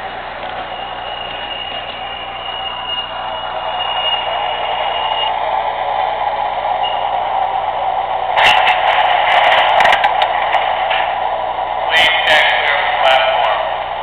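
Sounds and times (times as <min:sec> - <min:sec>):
model train running hum: 0:00.0 - 0:14.0
high tone: 0:00.6 - 0:05.4.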